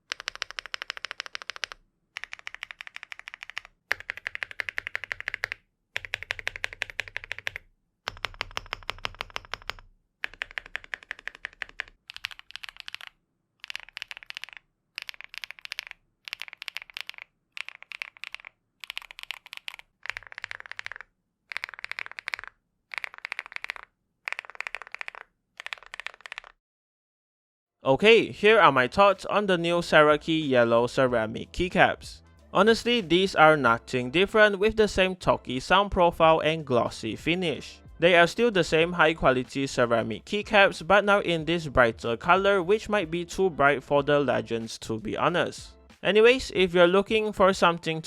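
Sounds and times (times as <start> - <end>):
mechanical keyboard typing: 0.0 - 26.6.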